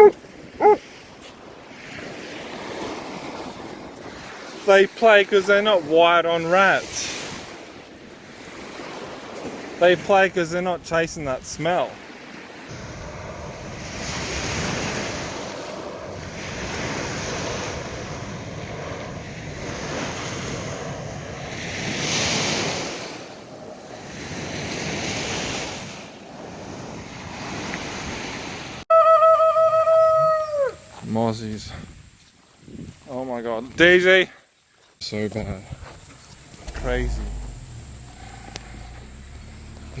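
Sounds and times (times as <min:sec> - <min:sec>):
surf breaking on a beach: 0:00.0 - 0:28.8, 0:36.3 - 0:40.0
loud long held call: 0:28.9 - 0:30.8
wind on microphone: 0:31.6 - 0:33.1.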